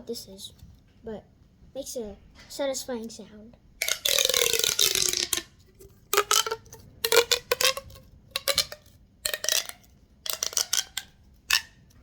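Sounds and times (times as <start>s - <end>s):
fidget toy clicking: 3.8s - 11.7s.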